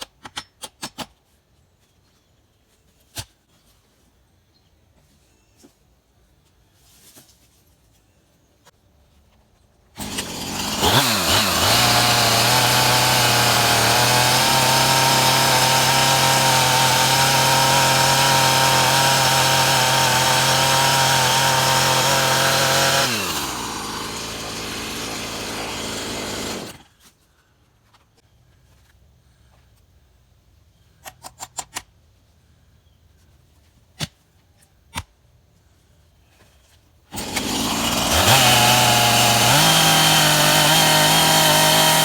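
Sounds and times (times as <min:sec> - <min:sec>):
chainsaw revving: 0:10.0 - 0:26.8, 0:37.1 - 0:42.0.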